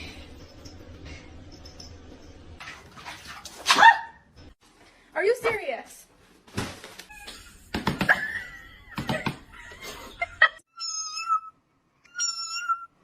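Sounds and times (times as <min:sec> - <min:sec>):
cat mewing: 0:10.7 - 0:12.9.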